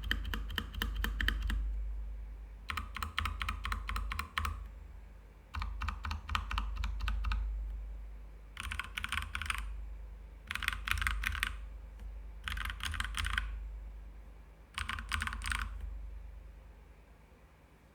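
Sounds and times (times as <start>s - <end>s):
mechanical keyboard typing: 0.0s - 1.6s, 2.7s - 4.7s, 5.6s - 7.5s, 8.6s - 9.7s, 10.5s - 11.7s, 12.4s - 13.6s, 14.8s - 15.9s.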